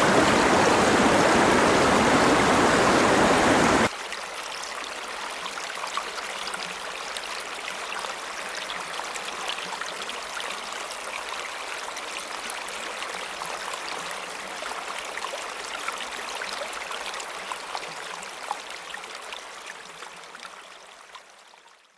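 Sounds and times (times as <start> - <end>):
small splashes and drips: 0.0 - 3.9
stream water flowing: 0.0 - 3.9.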